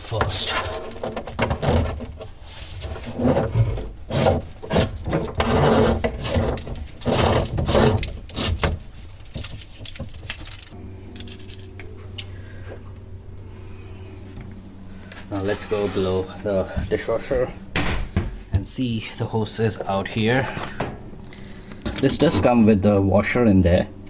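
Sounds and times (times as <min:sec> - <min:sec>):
hose rustling: 0:00.0 - 0:10.8
metal fittings clinking: 0:00.0 - 0:11.7
low steady hum: 0:00.0 - 0:24.0.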